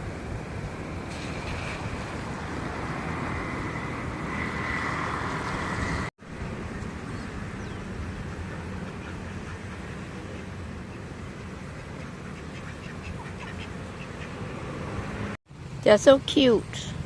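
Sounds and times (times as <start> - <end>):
low outdoor rumble with hiss: 6.3 - 14.6.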